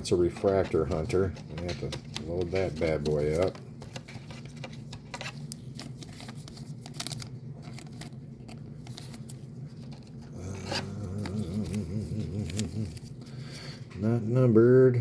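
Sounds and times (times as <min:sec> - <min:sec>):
plastic card sleeve rustling: 0:00.0 - 0:13.7.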